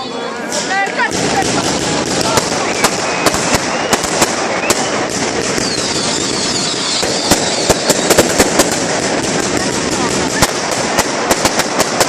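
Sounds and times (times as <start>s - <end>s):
fireworks bangs and crackles: 0.4s - 12.0s
gliding firework whistles: 1.3s - 8.8s.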